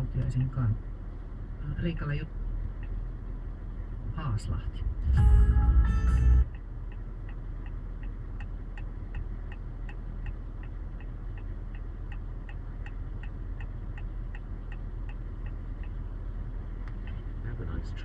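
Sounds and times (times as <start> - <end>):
low engine and road hum: 0.0 - 18.0
turn signal ticking: 0.1 - 0.7, 2.3 - 4.0, 6.1 - 17.4.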